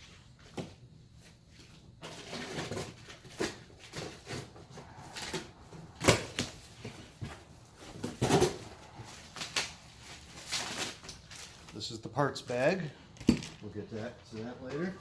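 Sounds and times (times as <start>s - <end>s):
packing rustling and scraping: 1.3s - 11.8s.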